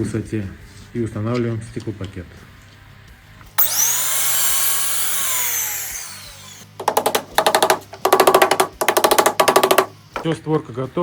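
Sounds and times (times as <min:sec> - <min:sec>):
power saw blade spinning down: 0:03.6 - 0:06.8.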